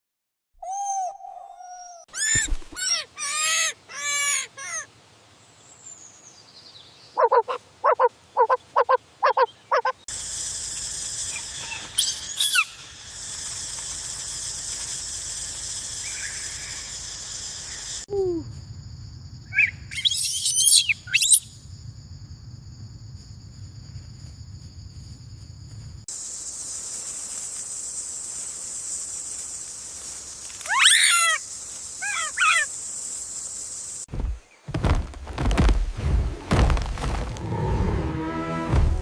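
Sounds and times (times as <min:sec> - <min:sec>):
animal calls: 0:00.6 - 0:04.9, 0:32.0 - 0:32.7
steady high hiss: 0:03.1 - 0:07.2, 0:10.1 - 0:18.7, 0:26.1 - 0:34.6.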